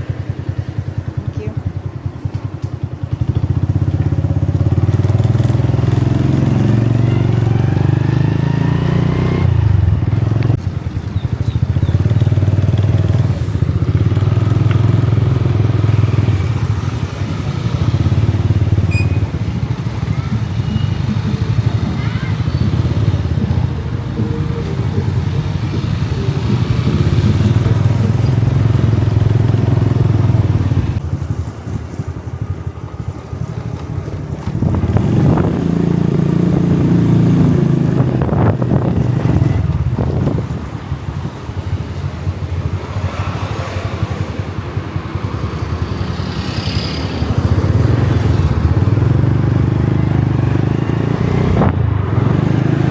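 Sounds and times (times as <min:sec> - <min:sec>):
motorcycle engine running: 0:00.0 - 0:52.9
wind and road noise rumble: 0:00.0 - 0:52.9.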